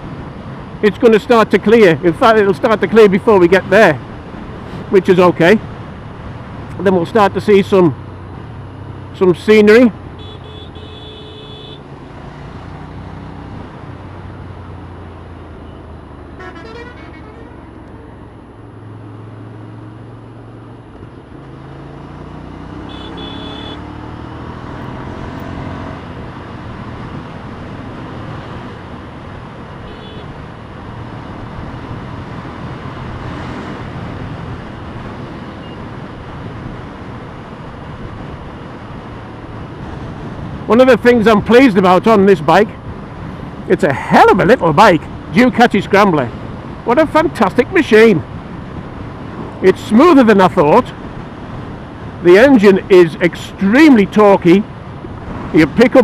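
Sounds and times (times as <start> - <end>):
wind and road noise: 0.0 - 56.0
vehicle horn toots: 10.2 - 11.8, 16.4 - 18.1, 22.8 - 23.9, 29.9 - 30.3.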